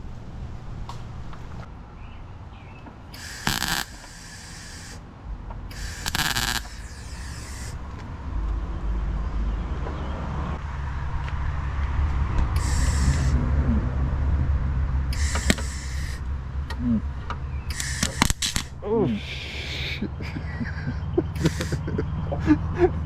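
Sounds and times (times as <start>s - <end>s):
welding arc crackling hiss: 3.1s - 5.0s, 5.7s - 7.8s, 12.6s - 13.4s, 15.1s - 16.3s, 17.7s - 18.7s, 21.4s - 21.8s
low steady rumble: 3.9s - 17.8s.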